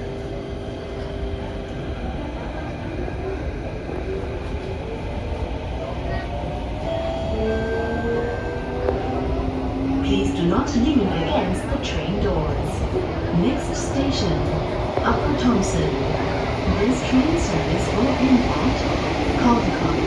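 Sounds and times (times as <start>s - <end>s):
train running gear rumble: 0.0s - 20.0s.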